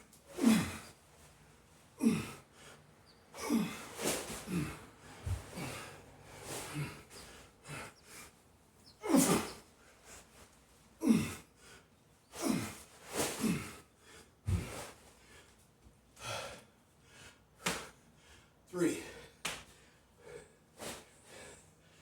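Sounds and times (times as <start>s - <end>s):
man breathing hard and gasping: 2.0s - 8.4s, 11.0s - 15.5s, 16.2s - 22.0s.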